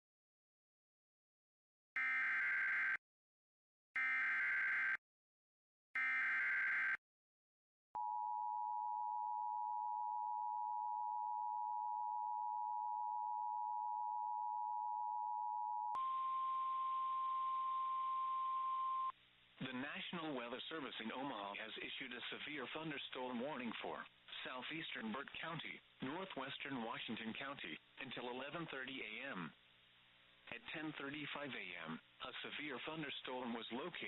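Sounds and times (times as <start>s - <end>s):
two-tone attention signal: 16.0s - 19.1s.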